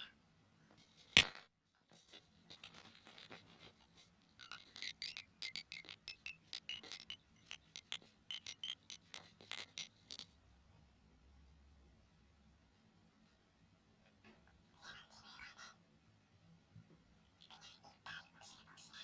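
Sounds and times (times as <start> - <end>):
soft scratching on earphones: 0.7 - 1.2, 1.8 - 5.9, 14.8 - 15.8, 17.4 - 19.0.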